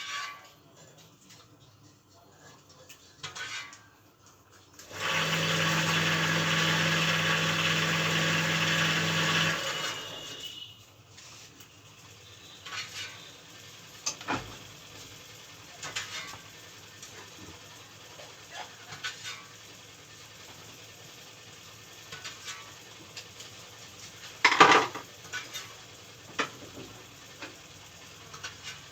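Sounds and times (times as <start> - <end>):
electric motor humming and whirring: 4.8 - 10.7.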